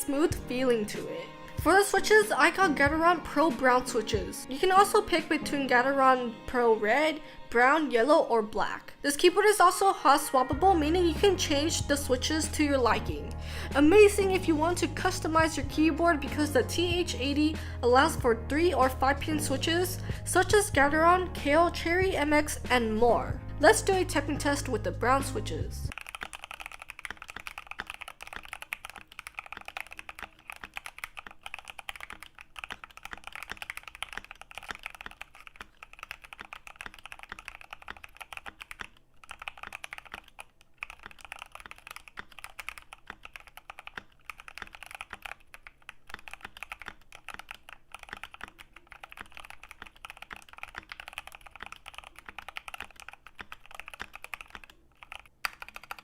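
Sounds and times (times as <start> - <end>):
mechanical keyboard typing: 23.6 - 56.0.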